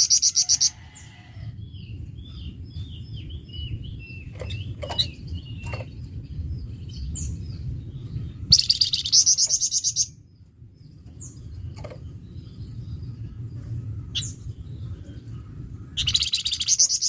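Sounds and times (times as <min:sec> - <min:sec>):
songbird chirping and trilling: 0:00.0 - 0:17.0
low rumble: 0:00.7 - 0:17.0.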